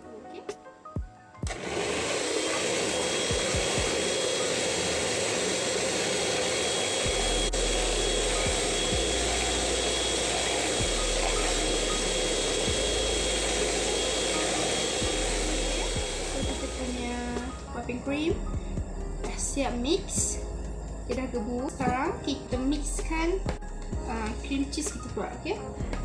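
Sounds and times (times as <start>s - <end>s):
electric mixer whirring: 1.4s - 17.7s.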